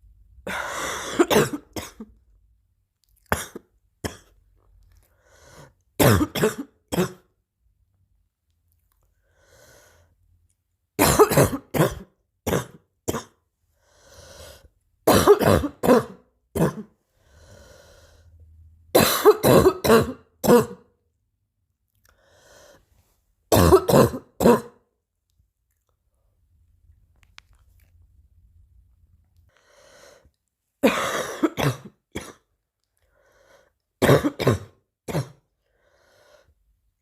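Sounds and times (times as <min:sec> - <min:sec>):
person coughing: 0:00.5 - 0:02.2, 0:03.3 - 0:04.4, 0:06.0 - 0:07.3, 0:11.0 - 0:13.4, 0:15.0 - 0:17.0, 0:19.0 - 0:20.9, 0:23.5 - 0:24.9, 0:30.8 - 0:32.5, 0:34.0 - 0:35.5
faint breaths drawn in: 0:05.0 - 0:05.8, 0:09.2 - 0:10.2, 0:13.6 - 0:14.8, 0:17.0 - 0:18.5, 0:22.1 - 0:23.4, 0:29.5 - 0:30.4, 0:33.0 - 0:33.9, 0:35.6 - 0:36.7.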